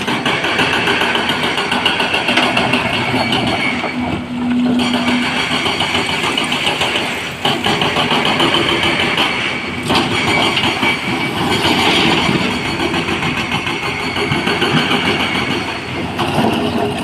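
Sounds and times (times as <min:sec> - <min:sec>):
heavy diesel machinery running: 0:00.0 - 0:17.0.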